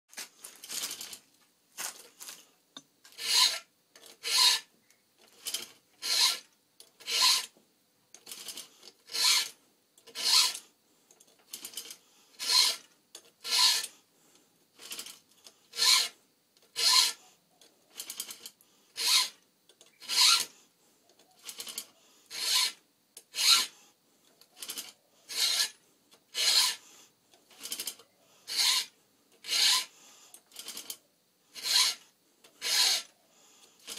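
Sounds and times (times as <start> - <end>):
file rasping on chainsaw chain: 3.1 - 4.7, 5.4 - 7.5, 8.3 - 10.6, 11.6 - 13.9, 14.8 - 16.2, 16.8 - 17.3, 18.0 - 19.4, 20.0 - 20.5, 21.4 - 23.8, 24.6 - 26.8, 27.6 - 30.0, 31.5 - 32.0, 32.6 - 33.1.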